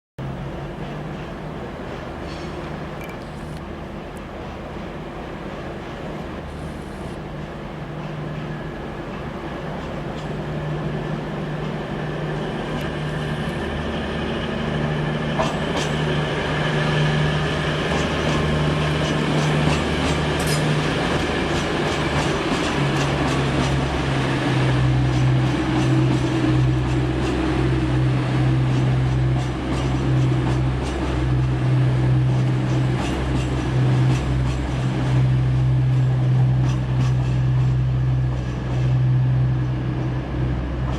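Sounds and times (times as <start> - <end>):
diesel train engines droning: 0.2 - 40.9
train wheels clicking over rail joints: 0.2 - 40.9.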